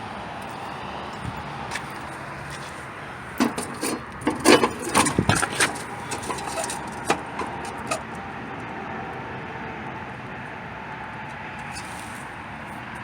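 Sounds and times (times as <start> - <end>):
knocks and clatters: 3.4 - 8.2.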